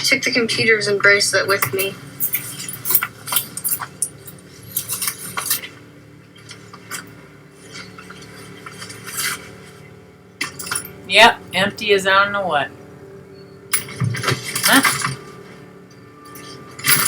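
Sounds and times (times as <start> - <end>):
hard objects clattering and clinking: 1.6 - 5.6, 10.4 - 11.0, 13.7 - 15.2, 16.3 - 17.0.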